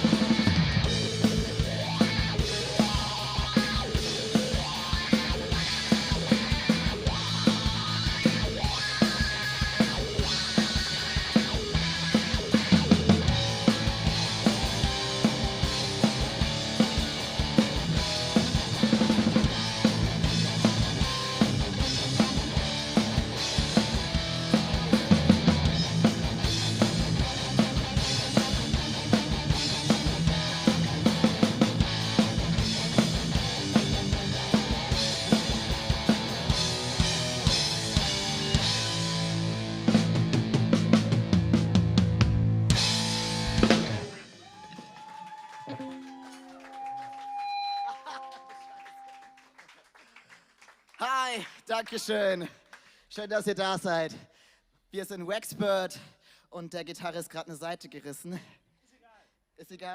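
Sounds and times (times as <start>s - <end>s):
live band playing: 0.0s - 44.5s, 45.6s - 49.4s
drum kit beat: 0.0s - 45.0s.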